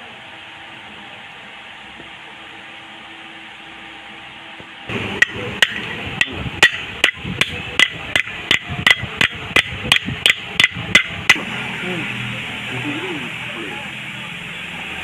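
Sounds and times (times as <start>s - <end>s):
hammer striking metal: 4.9s - 11.5s.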